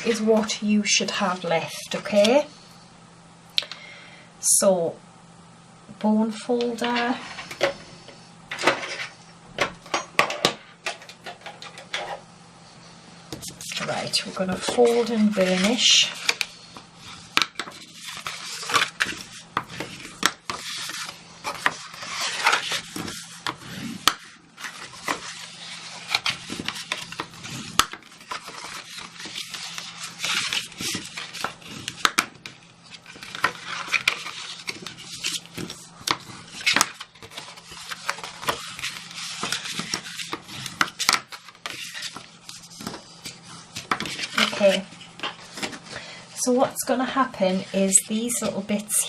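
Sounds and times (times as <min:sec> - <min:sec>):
bone folder scraping cardstock: 0:13.3 - 0:46.0.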